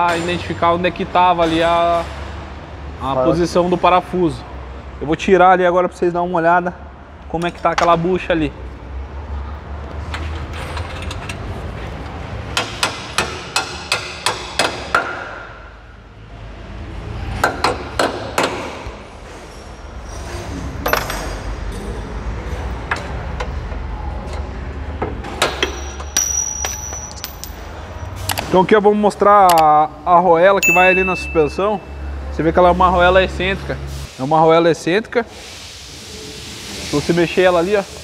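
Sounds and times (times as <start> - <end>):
high metallic ring: 25.7 - 28.1, 30.6 - 32.3
hammer striking metal: 30.6 - 32.1.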